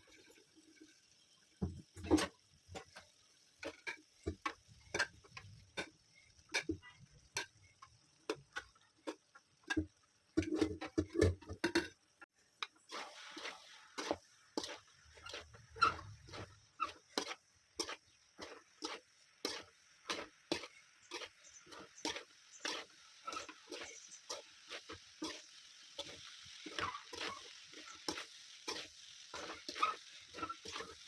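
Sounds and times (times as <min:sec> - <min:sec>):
utensil scraping a pan: 0:08.2 - 0:11.9, 0:12.7 - 0:31.0.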